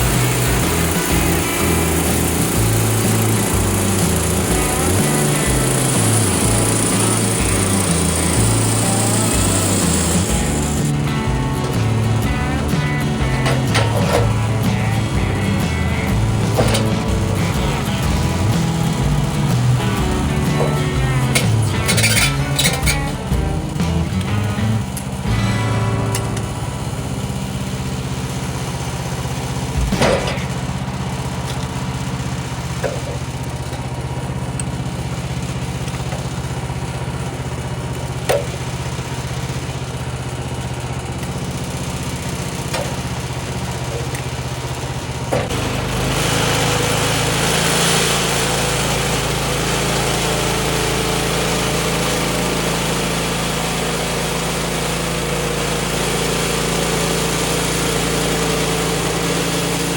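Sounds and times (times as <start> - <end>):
band blade cutting wood hiss: 0.0 - 24.6
sawmill engine running: 0.0 - 59.9.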